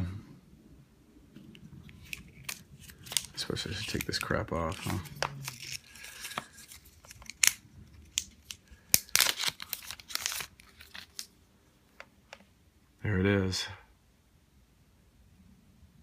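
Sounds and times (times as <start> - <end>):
plastic wrapping crinkling: 1.5 - 11.4.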